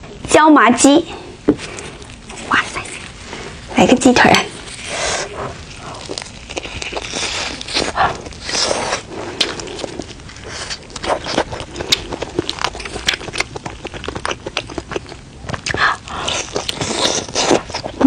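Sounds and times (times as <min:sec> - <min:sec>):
biting and chewing food: 0:04.5 - 0:18.0.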